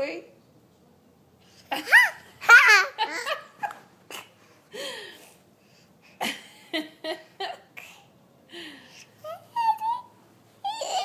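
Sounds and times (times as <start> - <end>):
baby squealing and babbling: 10.6 - 11.0.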